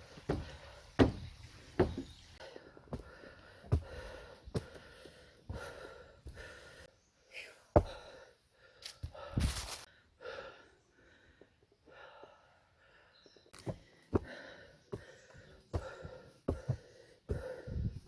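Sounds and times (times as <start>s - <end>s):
footsteps thudding: 0.2s - 2.1s
person breathing hard: 2.4s - 18.0s.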